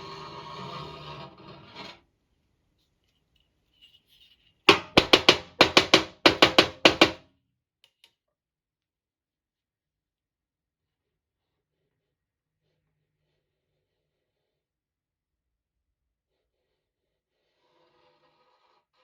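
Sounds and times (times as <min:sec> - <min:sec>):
sharp hollow ringing knocks: 0:04.7 - 0:07.2.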